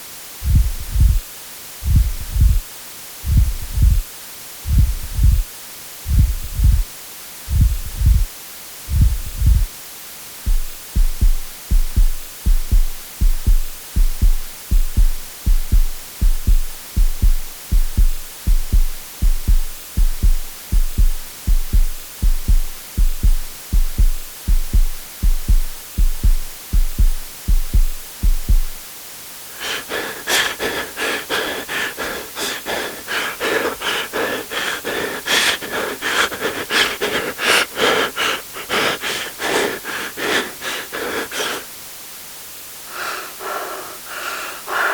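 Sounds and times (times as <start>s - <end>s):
deep heartbeat: 0.4s - 1.2s, 1.8s - 2.6s, 3.2s - 6.9s, 7.5s - 8.3s, 8.9s - 9.7s, 10.5s - 28.8s
rapid breathy panting: 0.4s - 1.2s, 1.8s - 2.6s, 3.2s - 4.0s, 4.6s - 6.9s, 7.5s - 8.3s, 8.9s - 9.7s, 10.5s - 28.8s, 29.5s - 41.7s, 42.9s - 44.9s.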